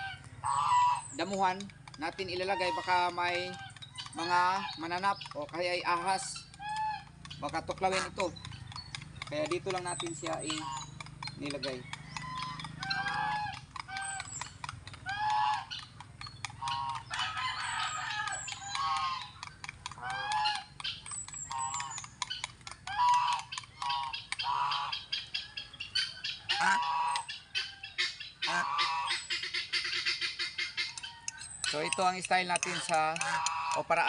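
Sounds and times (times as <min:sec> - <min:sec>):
fowl honking calls: 0:00.0 - 0:07.6, 0:10.2 - 0:11.0, 0:11.6 - 0:14.4, 0:15.0 - 0:15.9, 0:16.6 - 0:19.3, 0:20.0 - 0:34.0
small clicks: 0:01.3 - 0:17.2, 0:18.0 - 0:24.5.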